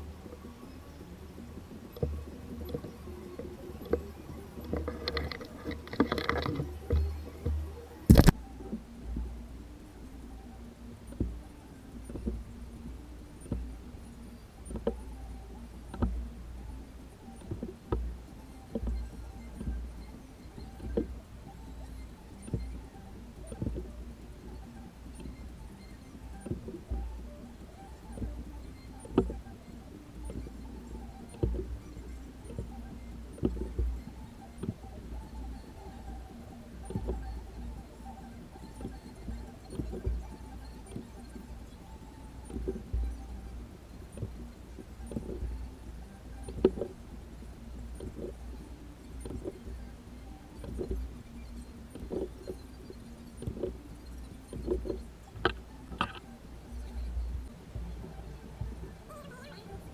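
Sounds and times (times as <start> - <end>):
irregular knocks and clicks: 1.9 - 8.4, 51.9 - 58.8
objects being handled knocks: 4.7 - 6.6, 8.1 - 8.4, 55.4 - 56.2.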